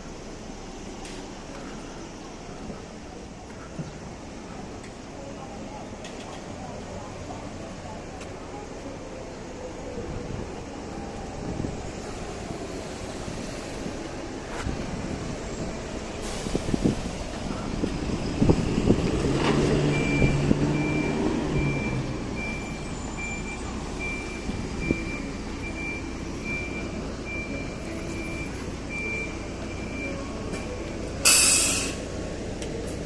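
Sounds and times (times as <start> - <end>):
air brakes hissing: 11.6 - 18.9, 30.6 - 32.2
vehicle reversing beeper: 15.0 - 32.1.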